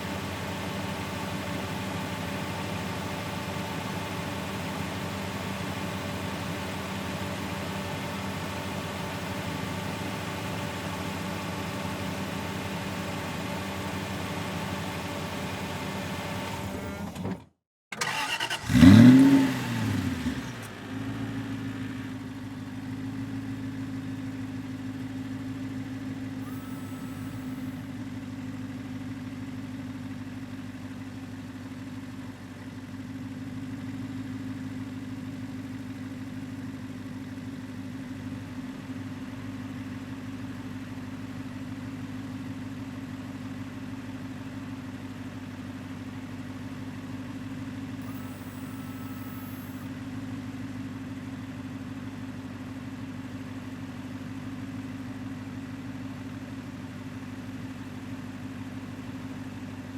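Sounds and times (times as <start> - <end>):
car engine starting and revving: 18.0 - 21.8, 26.4 - 27.8, 48.0 - 49.9.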